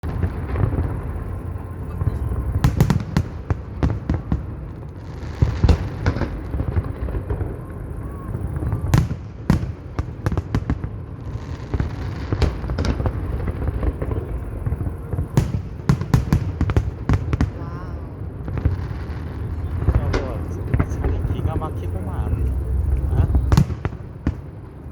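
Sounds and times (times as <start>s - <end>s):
fireworks bangs and crackles: 0.0s - 24.9s
low rumble: 16.6s - 24.9s.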